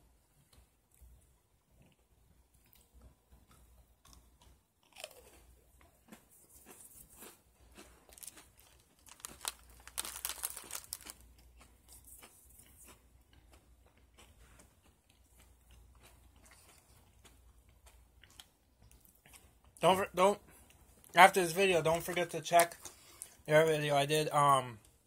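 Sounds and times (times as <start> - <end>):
chewing and crunching cookie: 0.0 - 25.0
popping candy crackles: 6.1 - 20.4, 21.0 - 23.5.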